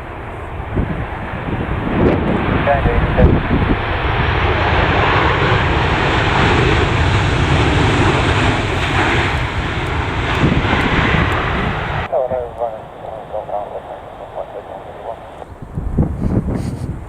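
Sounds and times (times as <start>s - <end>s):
jet engines roaring: 0.0s - 16.2s
wind buffeting microphone: 0.0s - 17.0s.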